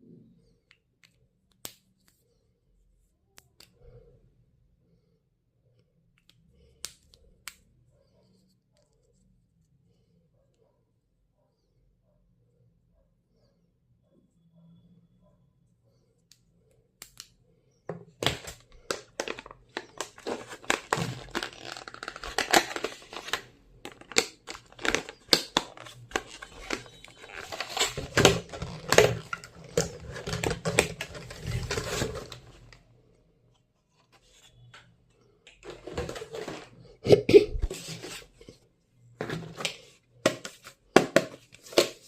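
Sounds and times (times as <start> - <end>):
packaging crinkling and tearing: 18.2 - 32.8.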